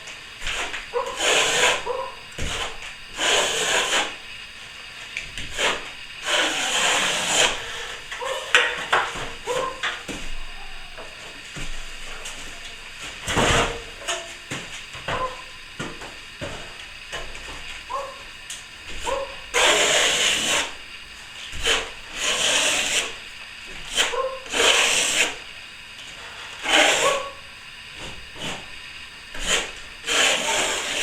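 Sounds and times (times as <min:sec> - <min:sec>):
hand tools scraping plaster: 0:00.0 - 0:04.2, 0:05.0 - 0:10.4, 0:18.9 - 0:20.8, 0:21.4 - 0:31.0.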